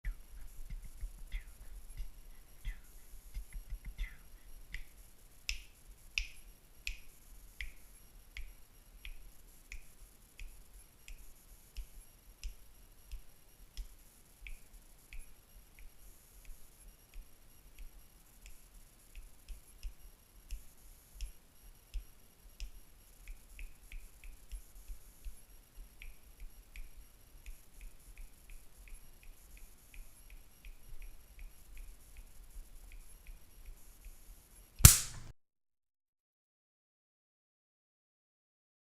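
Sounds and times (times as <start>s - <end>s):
fingers snapping: 34.8s - 35.3s.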